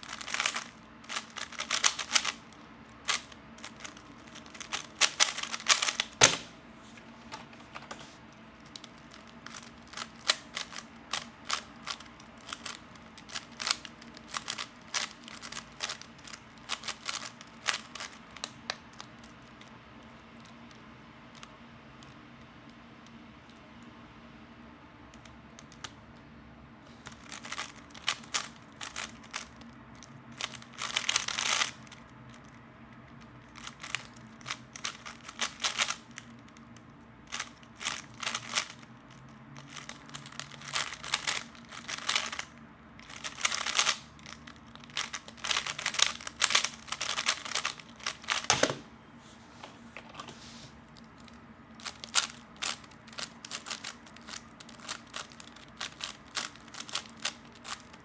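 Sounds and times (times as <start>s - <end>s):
puzzle cube plastic clicking: 0.0s - 6.5s, 8.6s - 19.3s, 27.0s - 32.4s, 33.4s - 48.8s, 51.1s - 58.0s.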